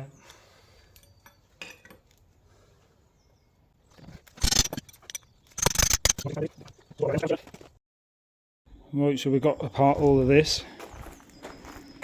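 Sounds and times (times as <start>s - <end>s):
metal tools clinking: 0.8s - 2.2s, 4.2s - 6.3s.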